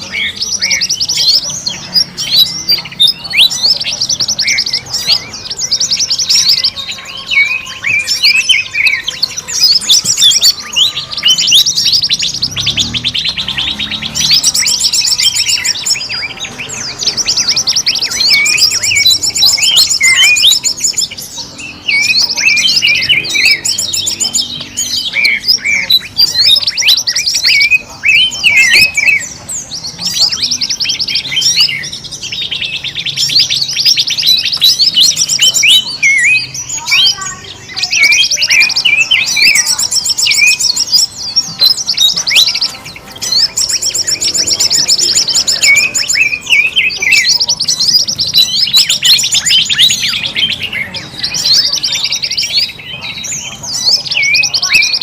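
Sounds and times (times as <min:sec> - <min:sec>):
small birds trilling and chirping: 0:00.0 - 0:55.0.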